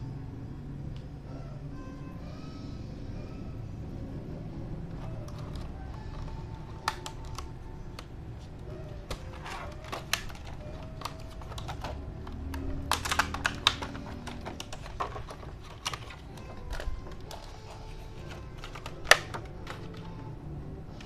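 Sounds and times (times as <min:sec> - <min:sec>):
low steady hum: 0:00.0 - 0:21.0
light clicks of plastic parts: 0:05.0 - 0:08.1.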